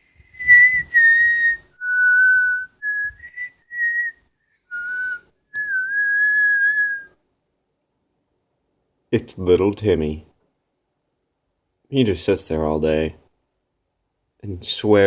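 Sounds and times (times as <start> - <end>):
person whistling: 0.2 - 7.2.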